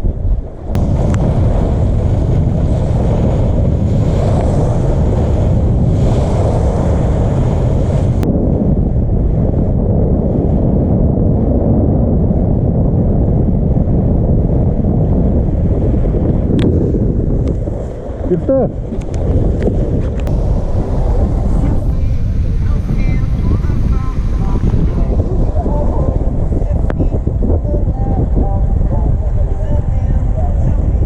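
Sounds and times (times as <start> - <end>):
water rushing past hull: 0.0 - 9.5, 14.4 - 27.6
wind buffeting microphone: 0.0 - 31.0.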